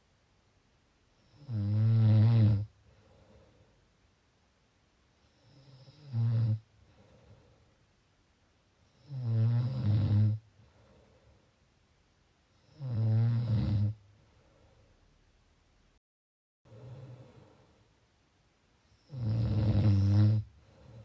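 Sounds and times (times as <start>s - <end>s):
person snoring: 1.2s - 3.5s, 5.3s - 7.5s, 9.0s - 11.0s, 12.6s - 14.0s, 18.9s - 21.0s
soft breathing: 2.8s - 4.0s, 6.7s - 8.0s, 10.5s - 11.8s, 14.0s - 15.2s, 16.7s - 18.0s, 20.5s - 21.0s.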